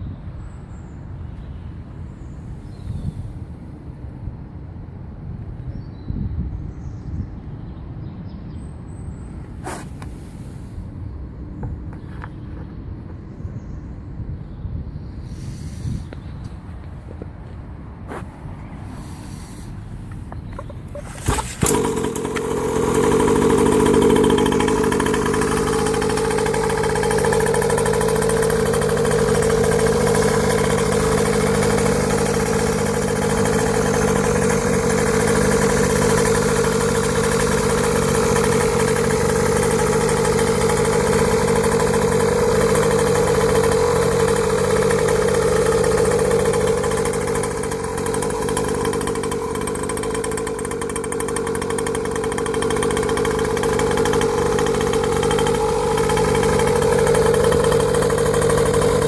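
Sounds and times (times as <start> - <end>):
dirt bike engine running: 20.1 - 59.0.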